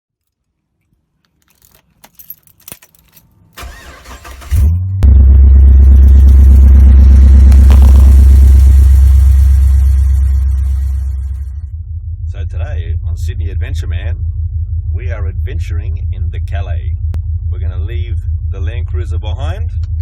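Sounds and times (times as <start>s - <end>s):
keys clicking: 0.2s - 3.6s
car engine cranking and idling: 1.4s - 20.0s.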